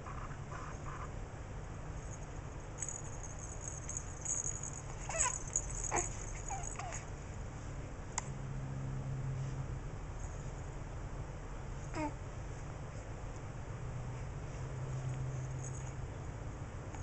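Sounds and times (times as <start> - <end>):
steady low hum: 0.0 - 17.0
animal squeaks and whimpers: 5.0 - 7.0.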